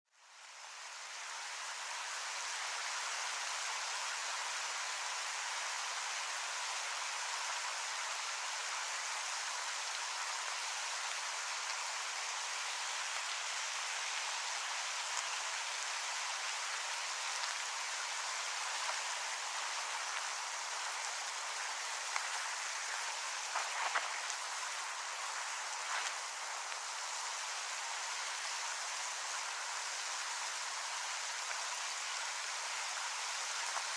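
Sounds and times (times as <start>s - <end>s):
steady rain falling: 0.1s - 33.9s.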